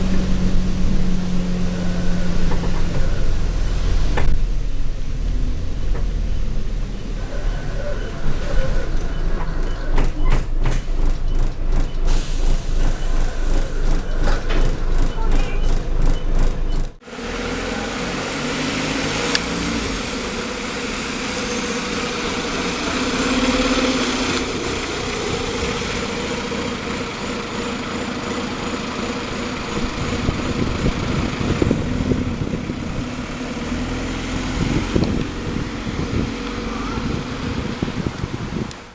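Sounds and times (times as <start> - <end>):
bus diesel engine running: 0.0 - 38.9
sharp rattles and knocks: 8.9 - 12.2, 13.6 - 17.0.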